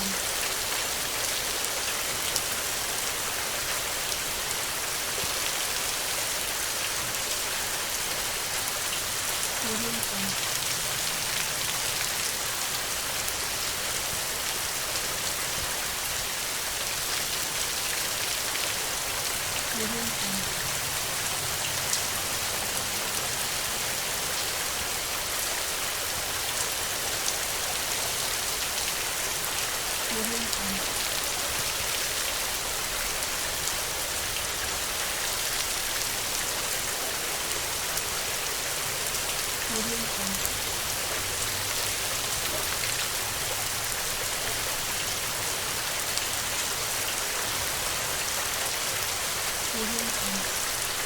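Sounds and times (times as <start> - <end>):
steady rain hiss: 0.0 - 51.0
raindrops ticking: 27.3 - 34.8.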